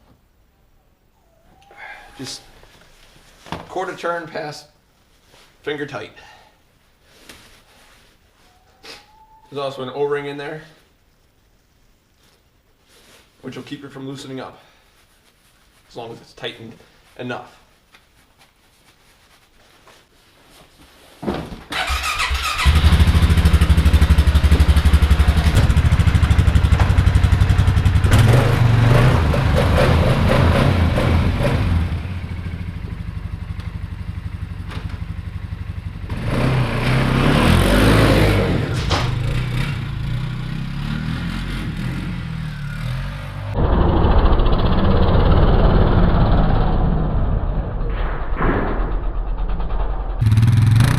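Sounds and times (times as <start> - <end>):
engine cranking and starting: 21.7 - 31.1
engine revving and idling: 22.2 - 47.9, 48.9 - 50.9.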